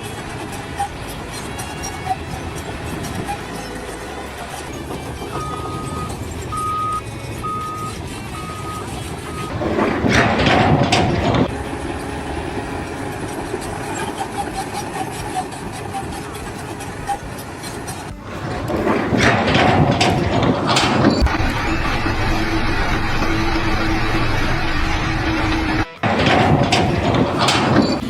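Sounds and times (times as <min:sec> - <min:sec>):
engine noise: 0:00.0 - 0:28.0
loud rough noise: 0:00.0 - 0:28.0
reversing alarm beeping: 0:03.1 - 0:16.4.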